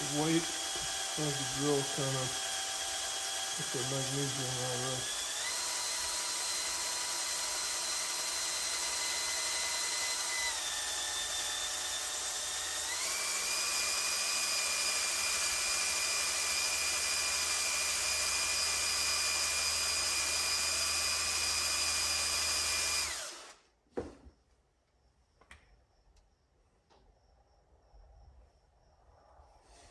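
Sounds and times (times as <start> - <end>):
electric drill whining: 0.0 - 23.6
click: 25.4 - 26.3.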